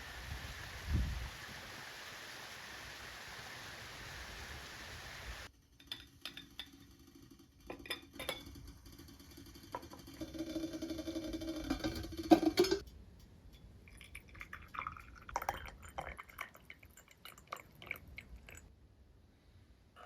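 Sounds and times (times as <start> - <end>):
steady hiss of running water: 0.0 - 5.5.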